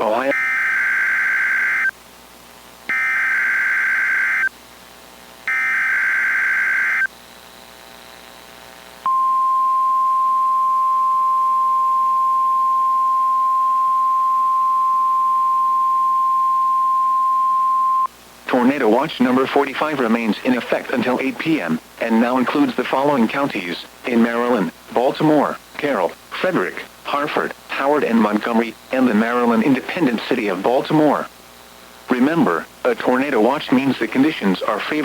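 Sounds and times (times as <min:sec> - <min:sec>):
steady alarm tone: 0:00.2 - 0:01.9, 0:02.9 - 0:04.5, 0:05.5 - 0:07.1, 0:09.1 - 0:18.1
warbling digital data bursts: 0:05.5 - 0:07.1.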